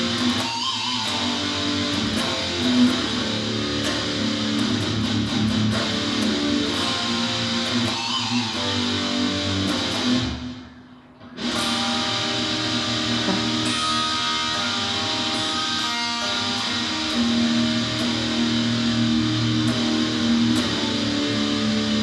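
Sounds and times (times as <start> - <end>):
guitar strumming heavy song: 0.0 - 22.0.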